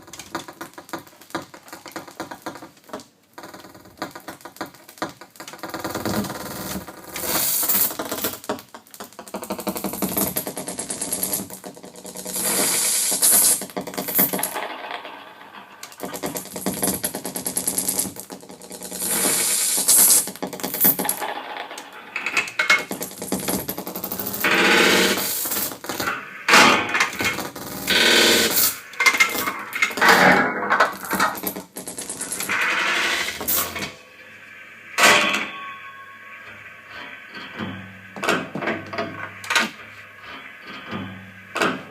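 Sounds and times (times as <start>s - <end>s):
hissing noise: 18.8s - 20.3s, 24.1s - 41.9s.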